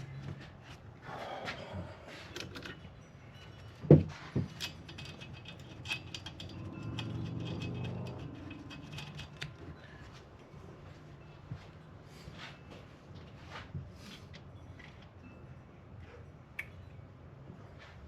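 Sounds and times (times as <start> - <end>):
metal parts clicking and clinking: 2.3 - 9.8.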